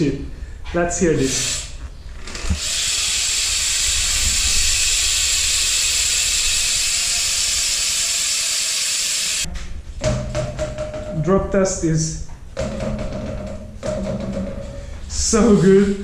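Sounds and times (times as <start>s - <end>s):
bicycle freewheel buzzing: 1.5s - 9.5s.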